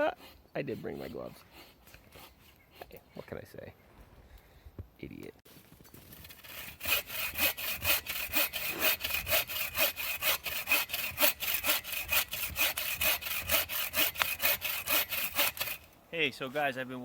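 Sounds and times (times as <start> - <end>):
hand saw cutting log: 0.0 - 3.3, 6.0 - 15.9.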